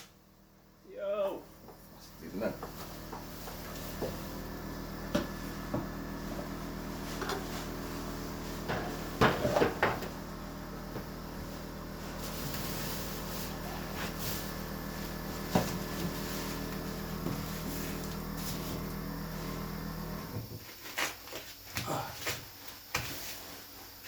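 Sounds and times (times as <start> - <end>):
steady low hum: 0.0 - 24.0
sharp knocks and clatters: 8.6 - 10.1.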